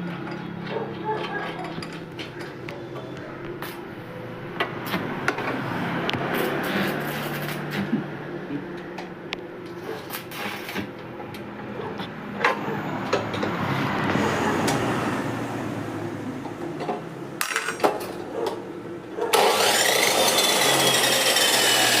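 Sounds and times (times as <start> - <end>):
chop saw motor whining: 19.3 - 22.0.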